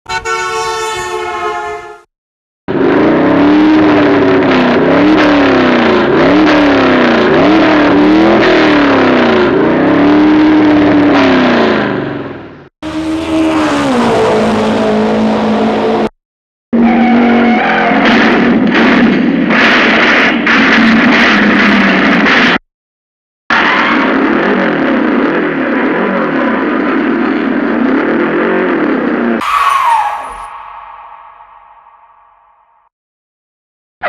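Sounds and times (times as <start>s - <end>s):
steady held tone: 29.4s - 32.8s.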